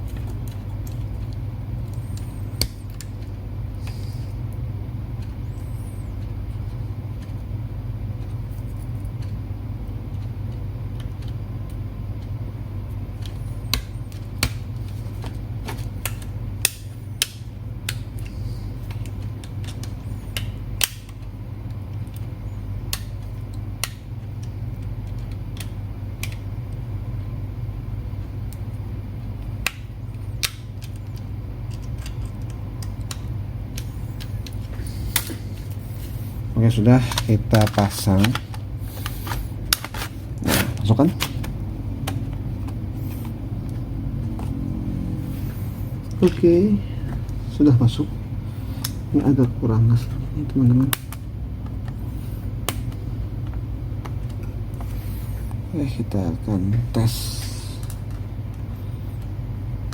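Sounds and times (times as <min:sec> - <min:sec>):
sharp clicks of laptop parts: 0:00.0 - 0:04.0, 0:13.2 - 0:22.3, 0:22.9 - 0:26.8, 0:29.6 - 0:35.8, 0:37.1 - 0:44.5
steady low hum: 0:00.0 - 0:59.9.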